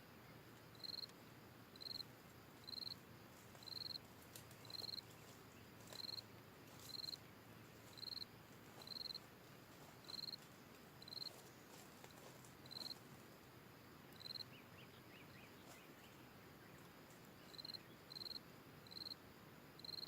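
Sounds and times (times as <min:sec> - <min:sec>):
background hiss: 0:00.0 - 0:20.0
insect buzzy chirps: 0:00.2 - 0:20.0
faint high twittering: 0:14.1 - 0:19.2.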